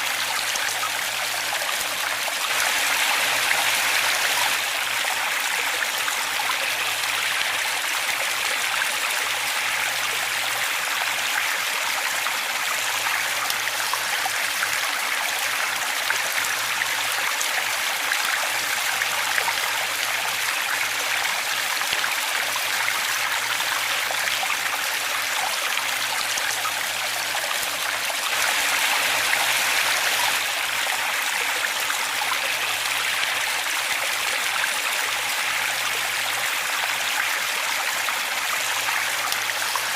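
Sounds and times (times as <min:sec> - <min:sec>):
waterfall rushing: 0:28.2 - 0:34.2.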